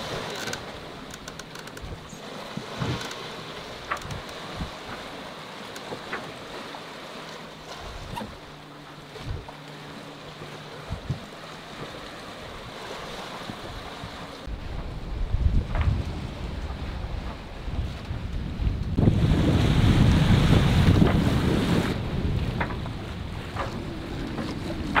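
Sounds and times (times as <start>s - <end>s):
water rushing past hull: 0.0s - 25.0s
wind on microphone: 10.8s - 11.3s, 13.4s - 25.0s.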